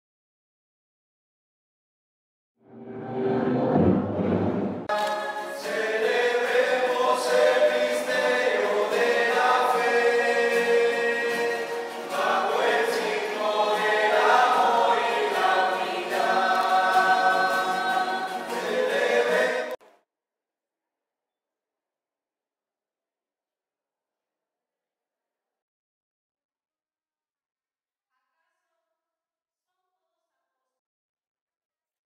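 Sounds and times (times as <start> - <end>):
choir singing a hymn: 4.8 - 19.8.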